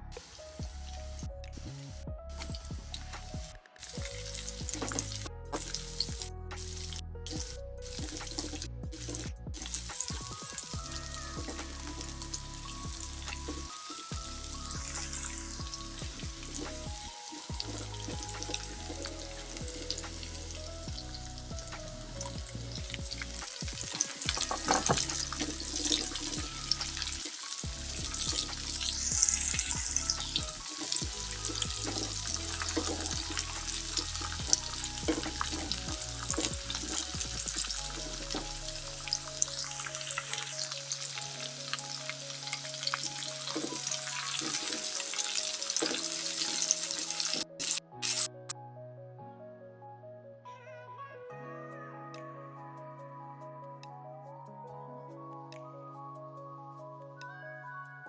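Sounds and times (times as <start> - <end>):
background music: 0.0 - 58.0
food sizzling in a pan: 23.5 - 35.5, 39.0 - 48.3.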